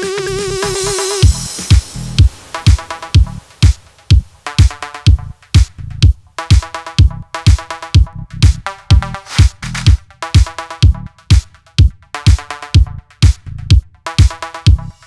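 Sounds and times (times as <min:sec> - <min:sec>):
electronic dance music: 0:00.0 - 0:15.0.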